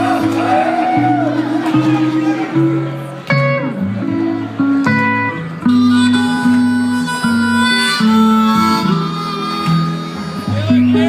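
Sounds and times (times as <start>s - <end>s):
guitar accompaniment: 0.0s - 11.0s
harmonica playing long notes: 5.0s - 11.0s.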